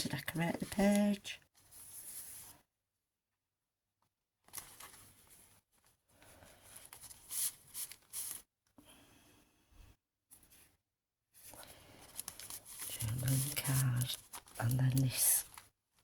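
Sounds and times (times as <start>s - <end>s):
paper pages rustling: 0.0s - 2.6s, 4.4s - 8.5s, 11.4s - 16.0s.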